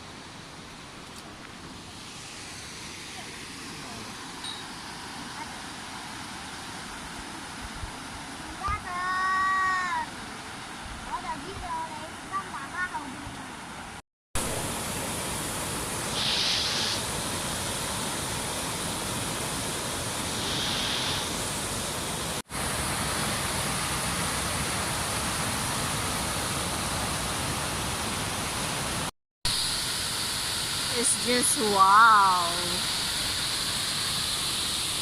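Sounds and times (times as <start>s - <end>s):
water pouring down a waterfall: 14.4s - 35.0s.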